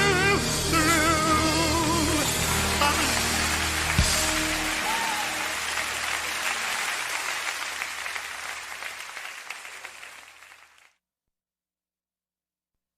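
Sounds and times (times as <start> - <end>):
congregation applauding: 1.9 - 11.0.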